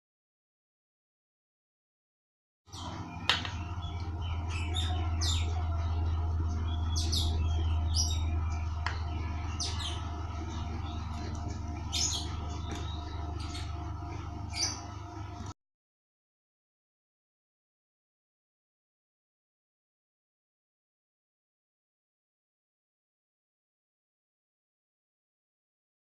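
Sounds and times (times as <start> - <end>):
small birds chirping: 2.7 - 15.5
steady low hum: 2.7 - 15.6.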